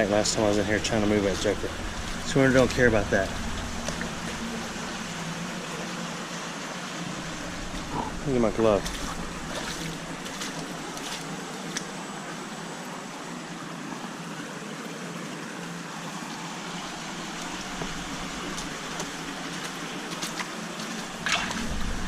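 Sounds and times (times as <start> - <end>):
steady rushing noise: 0.0 - 12.1.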